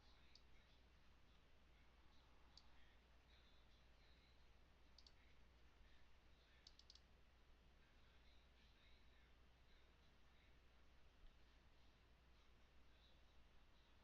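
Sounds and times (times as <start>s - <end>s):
faint low hum: 0.0s - 14.0s
computer mouse clicks: 4.9s - 5.2s, 6.6s - 7.1s.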